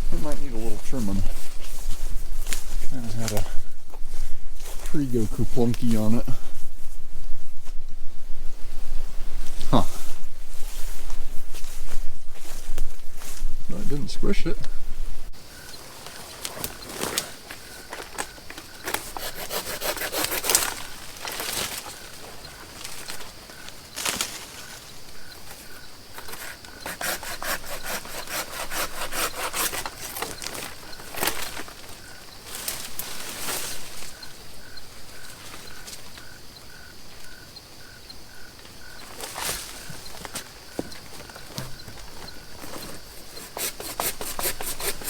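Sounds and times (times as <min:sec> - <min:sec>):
wood snapping: 0:17.9 - 0:22.0
hand saw cutting wood: 0:18.8 - 0:21.0, 0:26.2 - 0:30.7, 0:43.1 - 0:45.0.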